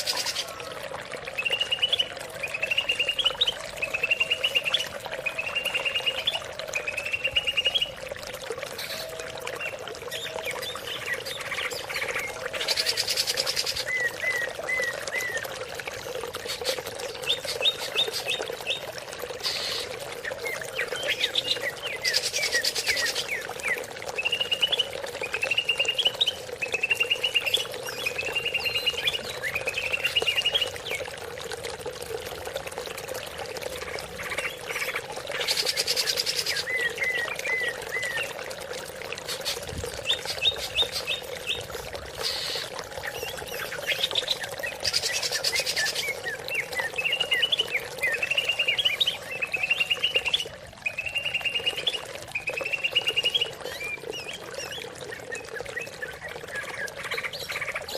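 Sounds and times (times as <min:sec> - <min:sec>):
running water: 0:00.0 - 0:57.9
bird singing trilled phrases: 0:01.3 - 0:08.1, 0:08.7 - 0:31.1, 0:33.7 - 0:38.4, 0:39.2 - 0:57.9.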